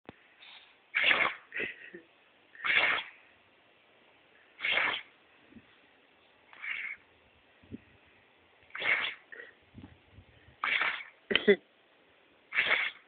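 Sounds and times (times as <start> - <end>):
dog snorting: 1.0 - 1.4, 4.6 - 5.1, 8.7 - 9.5, 10.6 - 11.1
dog sneezing: 1.0 - 1.5, 2.6 - 3.1, 4.6 - 5.1, 8.7 - 9.5, 10.6 - 11.4, 12.5 - 13.0.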